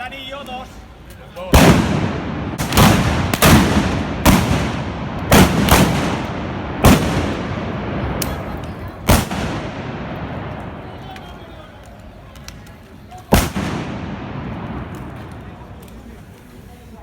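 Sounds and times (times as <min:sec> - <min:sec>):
loud gunshots with echoing tail: 0:01.5 - 0:11.0, 0:13.3 - 0:15.3.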